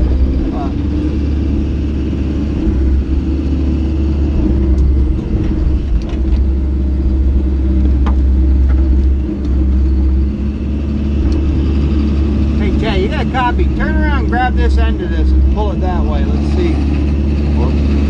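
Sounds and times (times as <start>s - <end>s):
diesel engine running: 0.0s - 18.0s.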